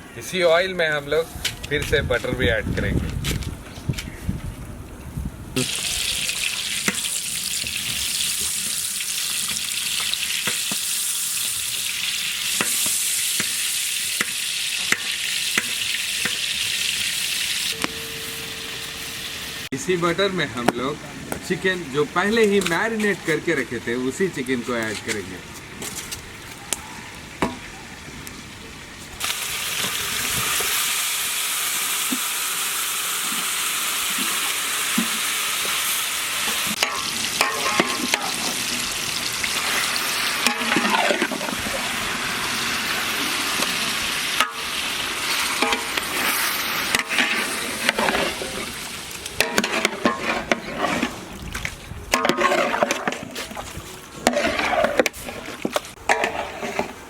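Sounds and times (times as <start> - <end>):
chicken sizzling in oil: 5.6 - 19.7, 29.2 - 51.3
stirring clatter in pan: 36.4 - 38.8, 39.6 - 41.8, 44.4 - 51.3, 52.1 - 57.0.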